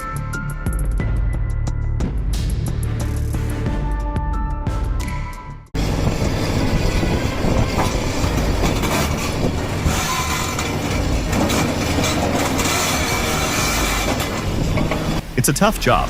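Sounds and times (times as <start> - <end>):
heavy machine rumbling: 5.8 - 16.0
rattling: 6.0 - 15.2.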